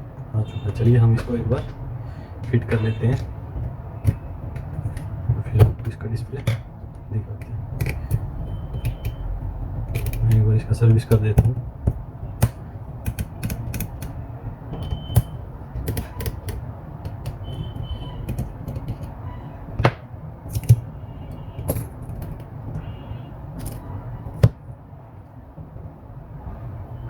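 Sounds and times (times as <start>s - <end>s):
clicks and taps on a laptop: 7.4s - 9.2s, 11.1s - 14.2s, 14.8s - 19.2s.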